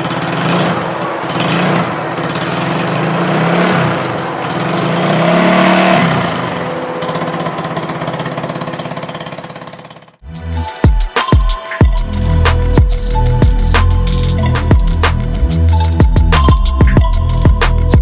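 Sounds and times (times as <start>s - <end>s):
scooter engine revving: 0.0s - 10.2s.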